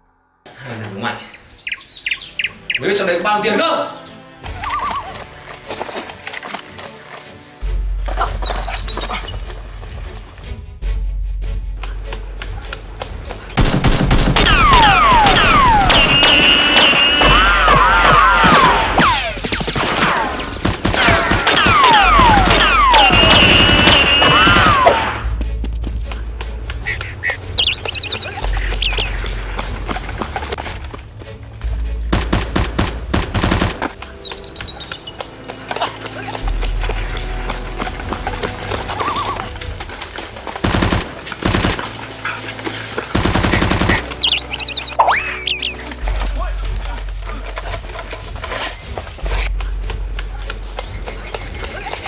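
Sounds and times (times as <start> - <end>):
rapid gunfire: 13.6 - 24.9, 32.1 - 34.0, 40.6 - 42.0, 43.1 - 44.3
quick high chirps: 26.9 - 29.2
automatic gunfire bursts: 43.2 - 44.2.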